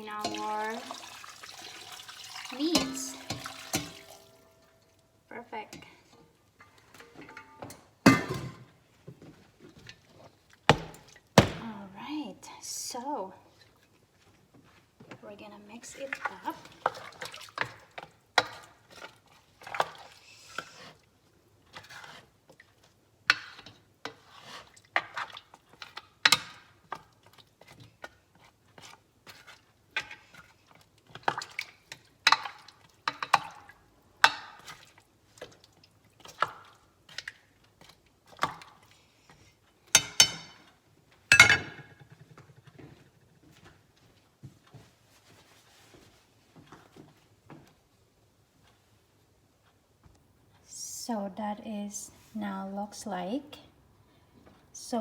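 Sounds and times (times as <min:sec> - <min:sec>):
utensil clinking against pot: 0:00.2 - 0:04.8, 0:40.0 - 0:40.7.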